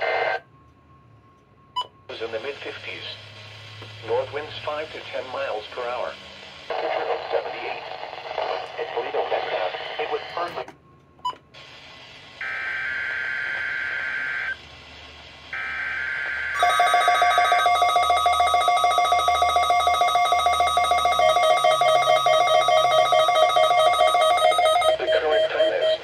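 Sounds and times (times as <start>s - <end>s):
steady warning alarm tone: 15.5s - 26.0s
rapidly pulsing electronic beep: 16.6s - 26.0s.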